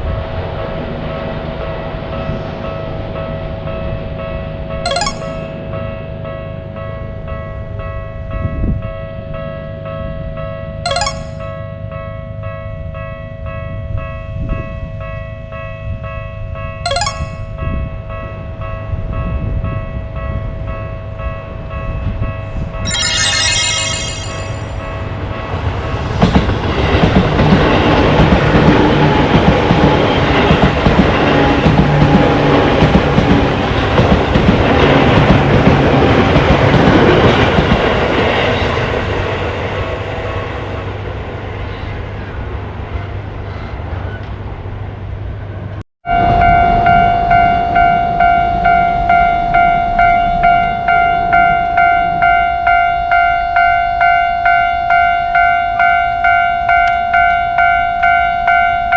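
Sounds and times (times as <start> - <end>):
railway crossing warning bell: 46.2 - 58.9.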